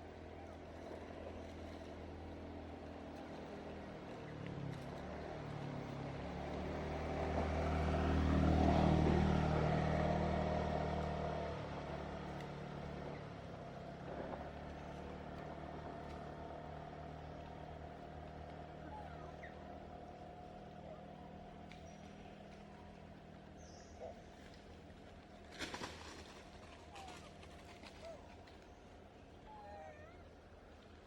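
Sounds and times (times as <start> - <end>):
faint steady engine hum: 0.0 - 31.0
vehicle engine passing by: 4.5 - 23.3, 25.5 - 28.6.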